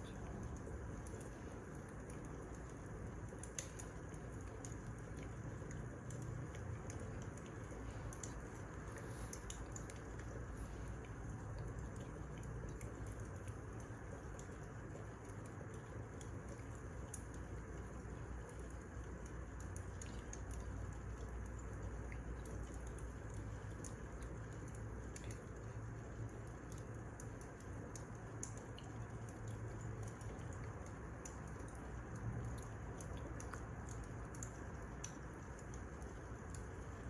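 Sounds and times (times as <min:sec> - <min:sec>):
wood fire crackling: 0:00.0 - 0:18.0.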